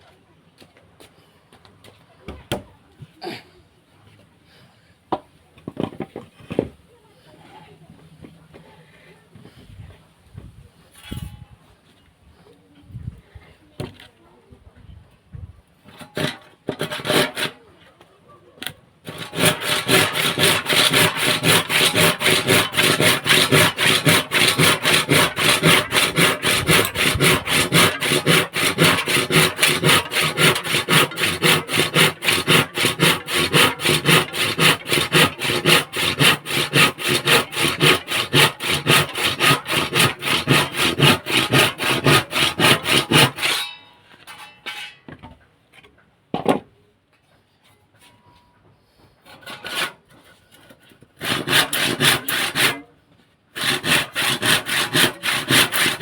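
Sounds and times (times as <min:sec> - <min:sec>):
hand saw cutting wood: 0:15.9 - 0:17.6, 0:19.0 - 0:43.7, 0:49.2 - 0:52.9, 0:53.5 - 0:56.0.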